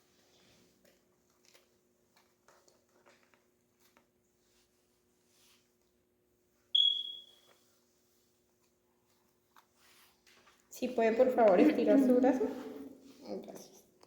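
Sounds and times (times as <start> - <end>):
blood pressure monitor beep: 6.8 - 7.5.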